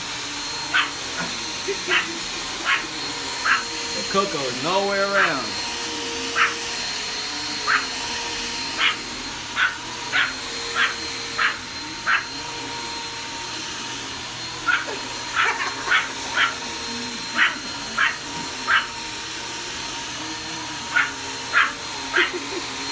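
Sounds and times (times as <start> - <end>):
vacuum cleaner running: 0.0 - 22.9
dog barking: 0.7 - 3.7, 6.3 - 6.6, 7.6 - 7.9, 8.8 - 12.3, 14.6 - 16.7, 17.3 - 18.9, 20.9 - 22.4.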